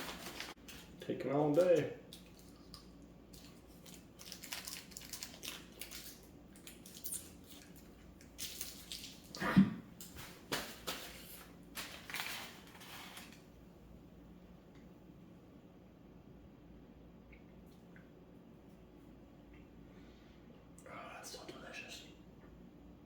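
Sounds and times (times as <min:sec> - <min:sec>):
crunching and chewing: 0:00.0 - 0:09.4
food rustling: 0:00.0 - 0:09.4, 0:10.0 - 0:13.5.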